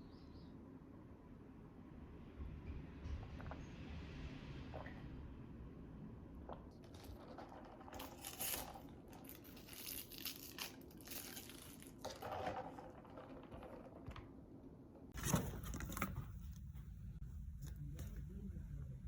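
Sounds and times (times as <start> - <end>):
crinkling and rustling: 6.7 - 16.9.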